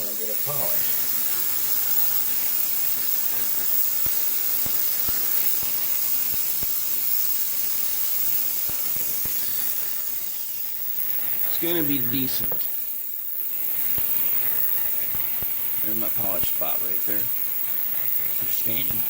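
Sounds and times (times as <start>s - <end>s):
steady hiss: 0.0s - 19.0s.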